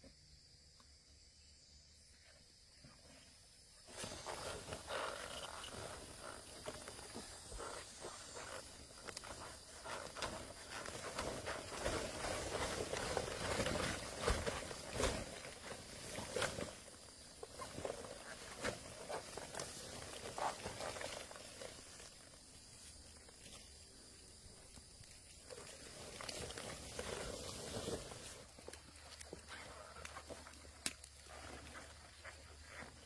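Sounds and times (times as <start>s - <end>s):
rustling vegetation: 3.2s - 33.0s
knocks and thuds in soil: 3.9s - 22.1s.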